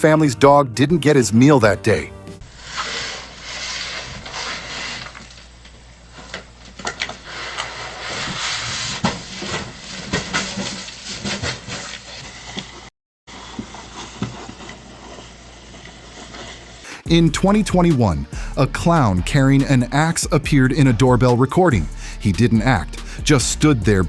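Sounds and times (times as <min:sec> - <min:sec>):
rustling and scraping of package: 0:02.5 - 0:16.9.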